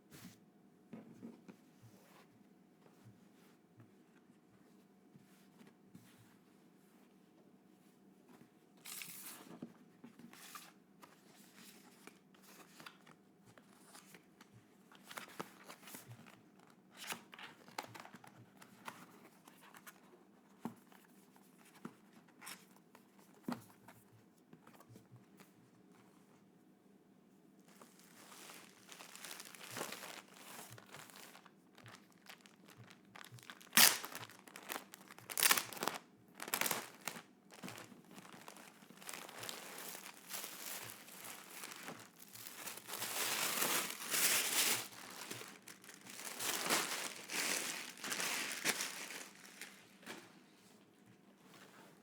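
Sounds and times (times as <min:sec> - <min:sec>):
packaging crinkling: 0:27.7 - 0:50.2.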